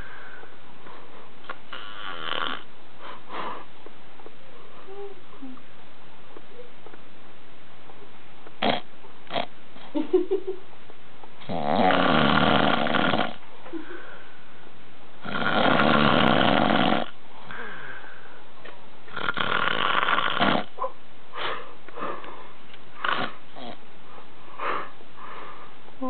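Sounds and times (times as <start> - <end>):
man snoring loudly: 1.7 - 2.7, 11.5 - 13.4, 15.2 - 17.2, 19.1 - 20.7.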